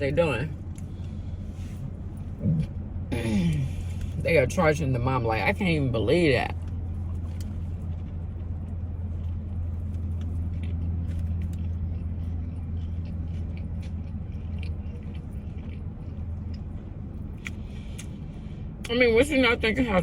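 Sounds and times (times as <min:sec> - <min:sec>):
car idling from inside cabin: 0:00.0 - 0:20.0
chewing and mouth sounds: 0:06.5 - 0:18.9.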